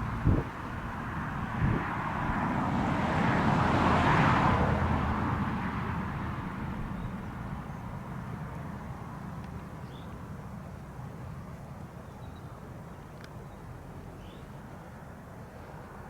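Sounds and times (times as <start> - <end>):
vehicle passing: 0.0 - 8.4.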